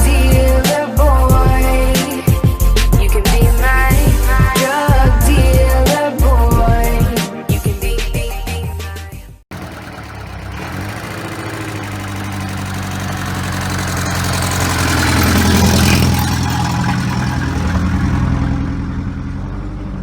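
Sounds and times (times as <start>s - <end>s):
petrol engine revving: 9.5s - 20.0s.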